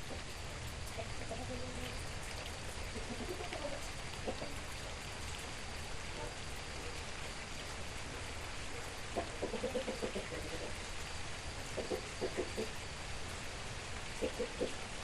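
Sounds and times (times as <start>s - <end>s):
steady rain falling: 0.0s - 15.0s
faint chicken clucks: 2.8s - 4.9s, 8.1s - 10.9s, 11.7s - 12.8s, 14.2s - 14.9s.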